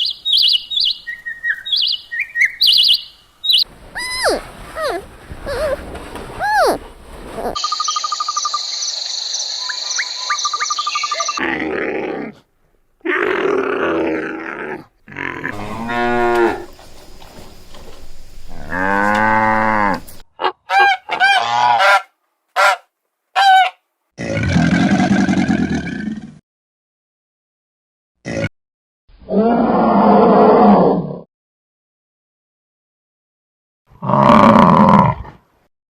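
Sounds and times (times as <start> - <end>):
cattle mooing: 15.1 - 16.8, 18.5 - 20.2.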